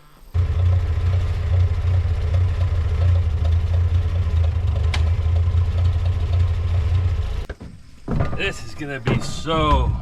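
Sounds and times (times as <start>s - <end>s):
heavy engine humming: 0.0s - 7.5s.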